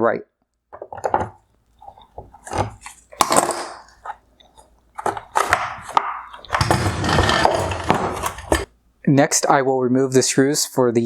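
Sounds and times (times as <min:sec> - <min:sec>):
pliers scraping and rattling: 0:00.8 - 0:08.7.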